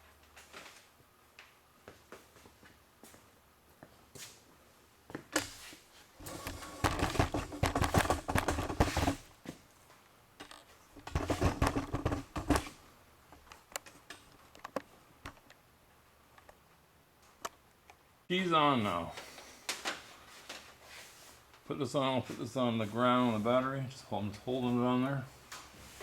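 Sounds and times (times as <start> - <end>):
hard objects clattering: 6.2 - 9.3, 10.4 - 12.7.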